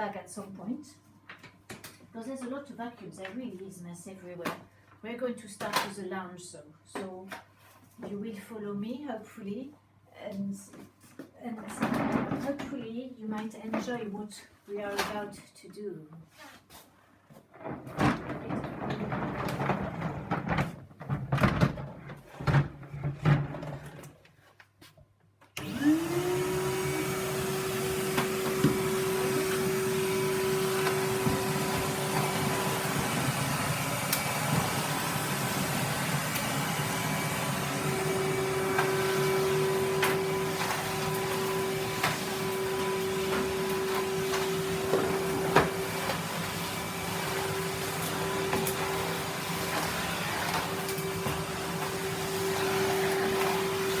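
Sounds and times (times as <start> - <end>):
vacuum cleaner motor whine: 25.6 - 54.0.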